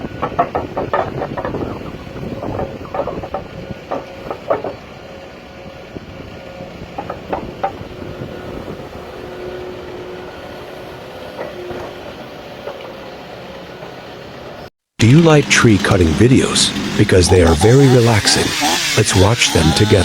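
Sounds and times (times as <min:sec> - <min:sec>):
heavy machinery running: 0:15.0 - 0:20.0.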